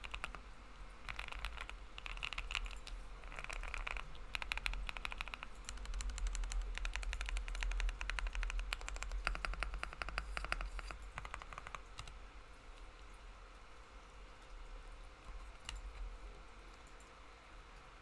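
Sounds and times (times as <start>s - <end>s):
fast typing on mechanical keyboard: 0.0s - 12.2s.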